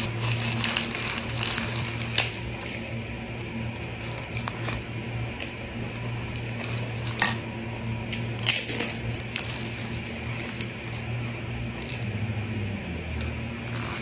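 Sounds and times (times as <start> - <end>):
steady low hum: 0.0 - 14.0
wet chewing: 8.1 - 14.0.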